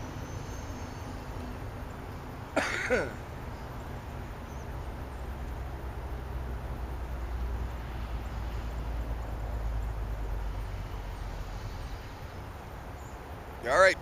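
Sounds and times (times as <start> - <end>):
person coughing: 2.6 - 3.2.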